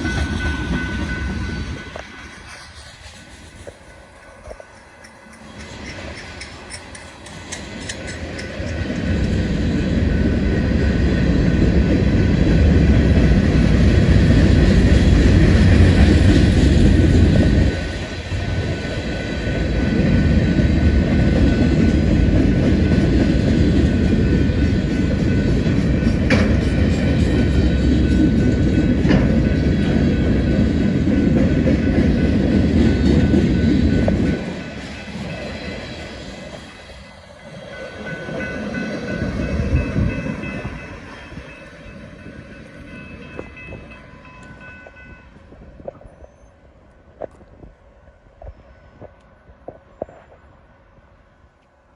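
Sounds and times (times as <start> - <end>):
wheels clickety-clack over rail joints: 0.0 - 50.6
freight train wheels rumbling: 0.0 - 51.9.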